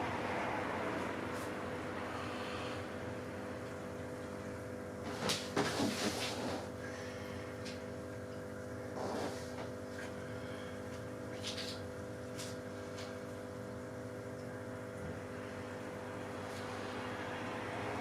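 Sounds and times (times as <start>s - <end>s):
steady hum: 0.0s - 18.0s.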